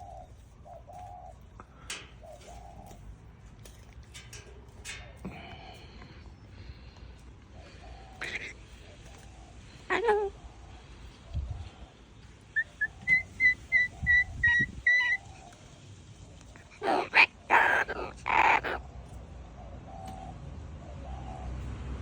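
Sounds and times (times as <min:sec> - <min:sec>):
parrot whistling: 0:12.6 - 0:15.2
parrot squawking: 0:12.6 - 0:15.3, 0:16.8 - 0:18.8.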